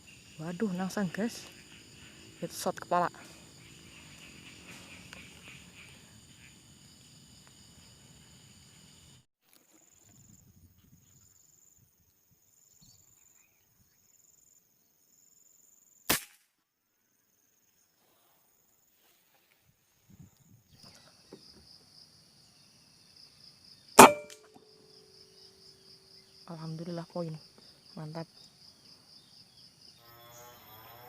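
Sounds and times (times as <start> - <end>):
air rifle shots: 24.0 - 24.4
short ringing tone: 24.0 - 24.4.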